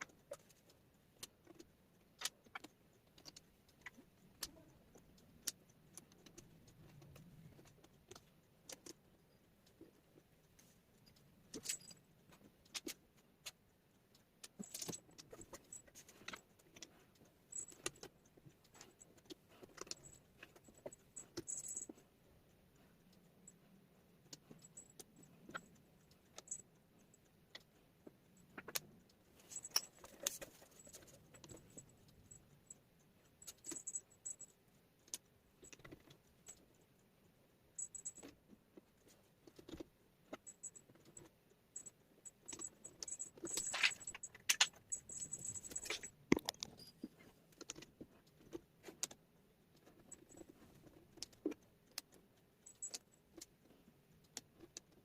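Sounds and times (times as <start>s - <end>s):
wooden puzzle pieces clattering: 43.5s - 46.7s.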